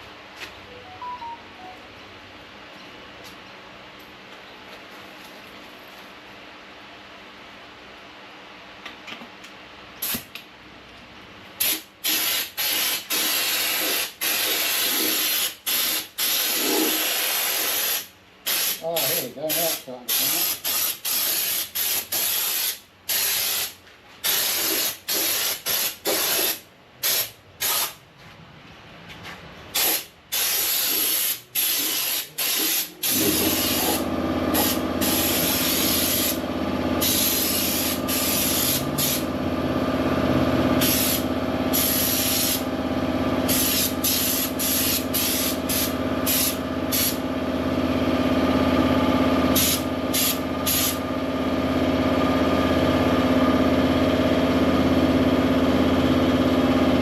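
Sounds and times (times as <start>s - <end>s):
spray gun hissing bursts: 11.6s - 27.9s, 29.8s - 36.4s, 37.0s - 39.3s, 40.8s - 42.7s, 43.5s - 47.2s, 49.6s - 51.0s
air compressor running: 11.6s - 28.0s, 29.7s - 57.0s.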